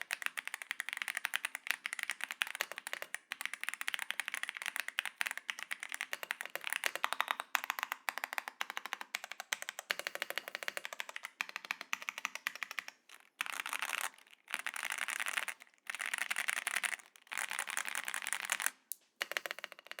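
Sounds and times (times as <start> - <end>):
mechanical keyboard typing: 0.0 - 20.0.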